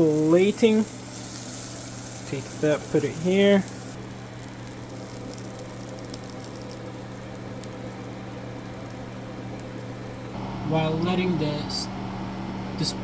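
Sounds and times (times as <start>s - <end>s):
steak sizzling in a skillet: 0.0s - 10.4s
steady low hum: 0.0s - 13.0s.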